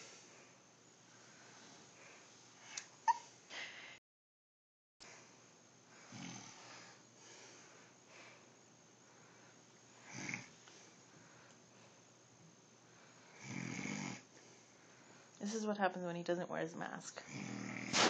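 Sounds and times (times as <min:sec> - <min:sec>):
man snoring: 0:06.0 - 0:06.6, 0:10.0 - 0:10.5, 0:13.3 - 0:14.3, 0:17.2 - 0:18.0.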